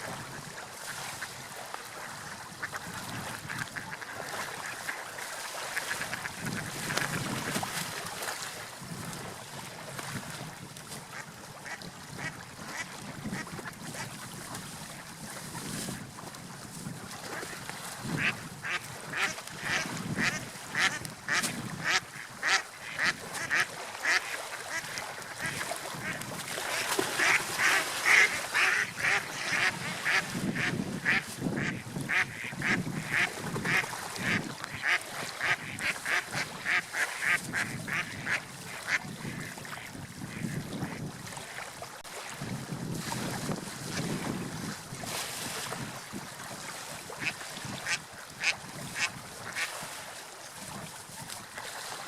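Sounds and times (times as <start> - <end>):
waterfowl calling: 18.2 - 41.0.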